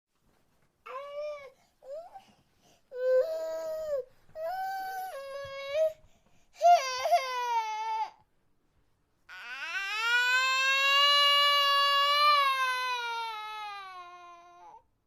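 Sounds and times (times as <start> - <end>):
high-pitched baby-like crying: 6.6 - 8.2, 9.3 - 14.8.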